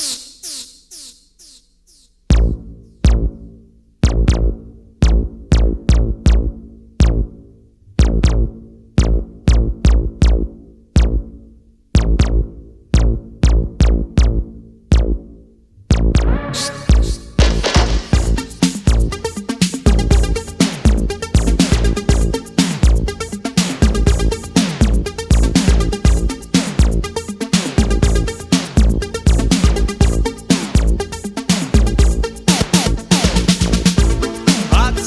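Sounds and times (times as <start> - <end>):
electronic dance music: 0.0 - 2.6, 16.1 - 35.0
deep booming bass kicks: 2.3 - 7.4, 8.0 - 11.4, 12.0 - 15.3, 15.9 - 19.2.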